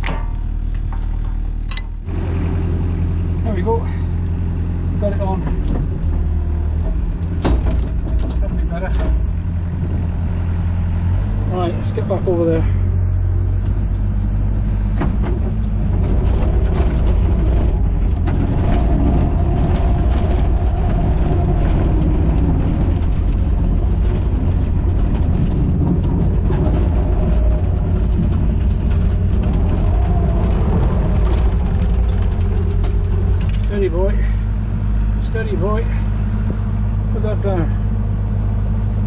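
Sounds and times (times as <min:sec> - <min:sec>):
clanking of arm and tracks: 0:00.0 - 0:02.0, 0:05.1 - 0:10.2, 0:14.6 - 0:34.6
excavator diesel engine: 0:00.0 - 0:39.0
hydraulic whine: 0:00.0 - 0:39.0
high squeal: 0:17.1 - 0:36.9.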